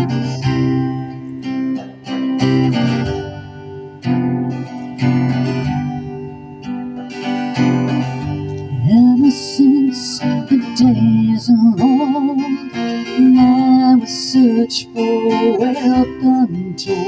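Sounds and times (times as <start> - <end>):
acoustic guitar strumming: 0.0 - 17.0
person singing: 8.5 - 17.0.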